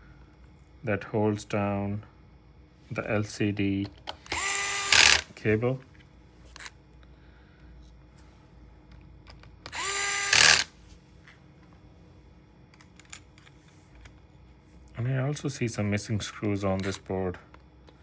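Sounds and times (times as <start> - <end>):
electric screwdriver whirring: 4.3 - 5.3, 9.7 - 10.7.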